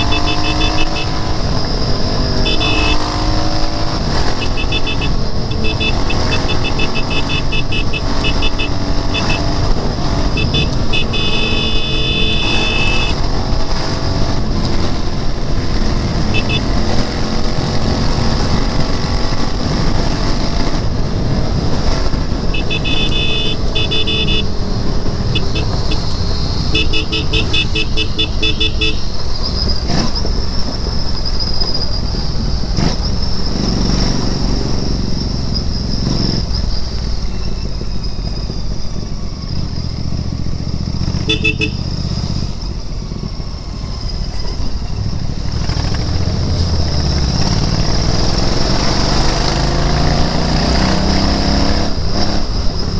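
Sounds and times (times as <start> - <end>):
vehicle horns honking: 0.0 - 13.6, 15.8 - 18.7, 22.4 - 29.3, 41.2 - 42.0
motorcycle engine running: 0.0 - 31.4, 38.0 - 42.8.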